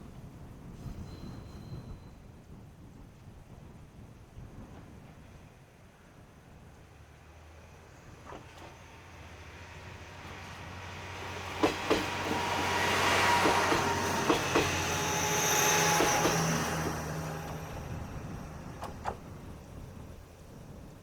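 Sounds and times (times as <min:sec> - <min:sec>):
diesel railcar passing: 0:05.0 - 0:21.0
wheels clacking over rail joints: 0:07.8 - 0:20.9.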